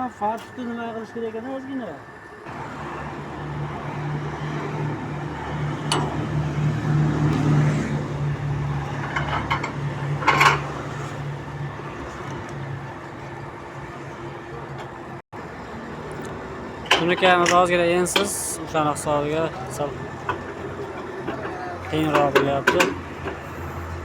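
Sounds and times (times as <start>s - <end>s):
sheet metal machine humming: 2.1s - 15.2s.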